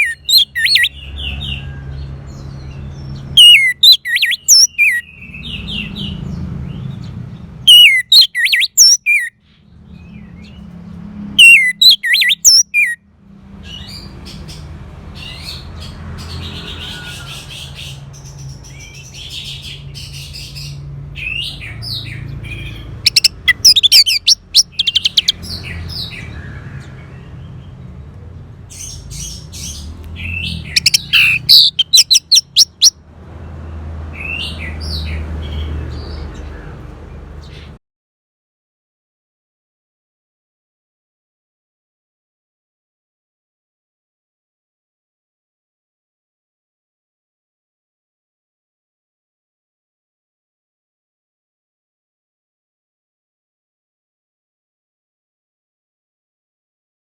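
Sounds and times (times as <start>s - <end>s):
thrush singing whistled notes: 0.0s - 1.2s, 3.4s - 5.4s, 7.7s - 9.3s, 11.4s - 13.0s, 23.0s - 26.1s, 30.2s - 32.9s.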